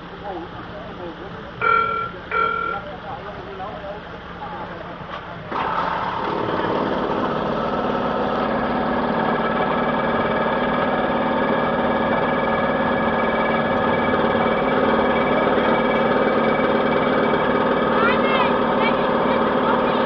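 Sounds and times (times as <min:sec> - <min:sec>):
engine running steadily: 0:00.0 - 0:20.0.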